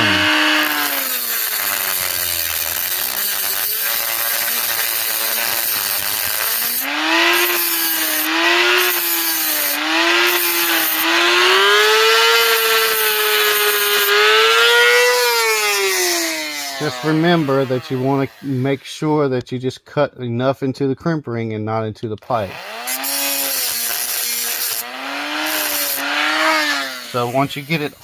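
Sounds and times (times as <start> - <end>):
harsh grinding hiss: 0.0 - 11.1, 22.9 - 28.0
rotary tool whine: 0.0 - 18.8, 22.5 - 28.0.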